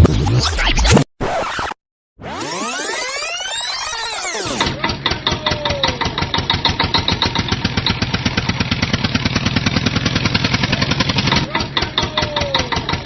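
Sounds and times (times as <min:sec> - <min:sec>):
tractor engine idling: 0:04.8 - 0:13.0.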